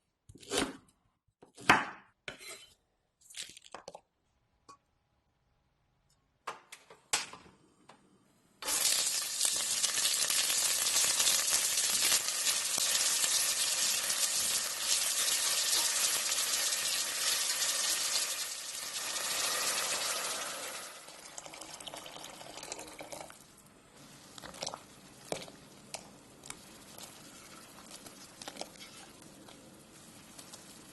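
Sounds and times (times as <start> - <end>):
food sizzling in hot oil: 8.6 - 21.4.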